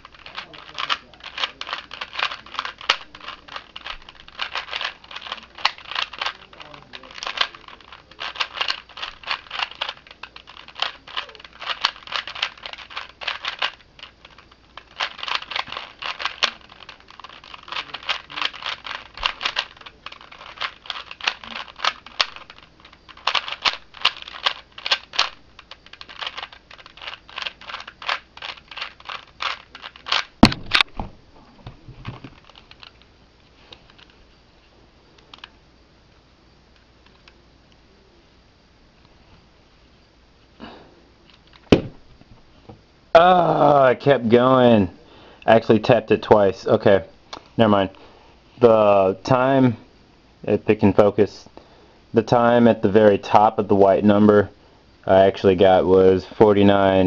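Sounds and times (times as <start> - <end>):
speed cube plastic clicking: 0.0 - 30.9, 32.0 - 33.1, 35.2 - 35.5, 36.7 - 37.4.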